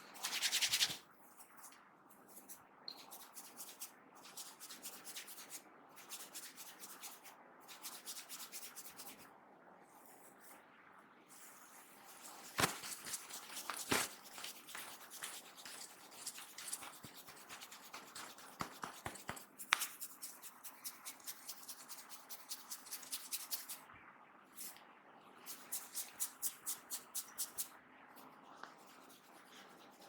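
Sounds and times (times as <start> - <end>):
fingers rubbing through hair: 11.4 - 23.8, 25.5 - 30.0.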